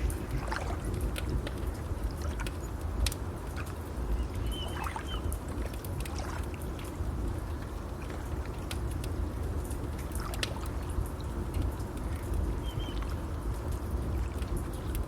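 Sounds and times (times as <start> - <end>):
fire crackling and popping: 0.0 - 15.0
bird chirp: 4.1 - 5.3, 12.6 - 13.0.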